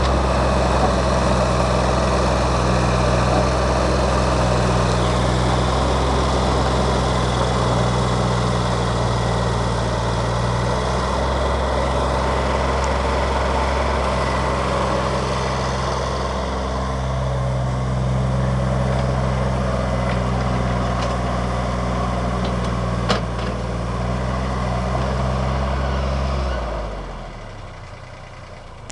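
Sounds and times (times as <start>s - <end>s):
excavator diesel engine running: 0.0s - 28.9s.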